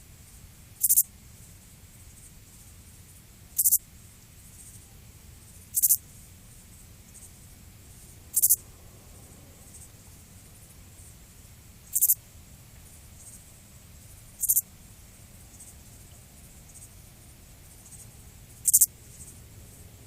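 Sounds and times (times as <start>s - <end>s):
faint low hum: 0.0s - 20.0s
insect chirping in buzzy trills: 0.0s - 20.0s.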